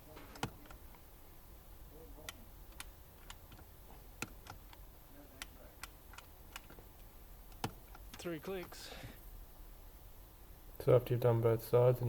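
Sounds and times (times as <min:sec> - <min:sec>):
handbrake ratchet clicking: 0:07.5 - 0:08.2.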